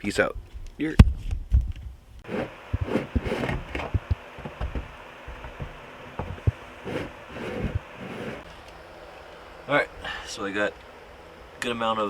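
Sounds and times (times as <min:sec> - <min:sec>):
rustling: 0:02.3 - 0:04.1, 0:06.8 - 0:08.5.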